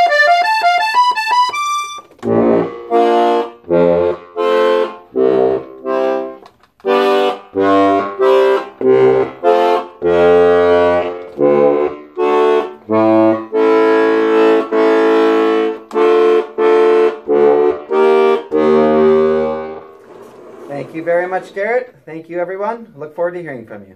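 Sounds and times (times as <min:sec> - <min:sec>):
button accordion notes: 0:00.0 - 0:22.0.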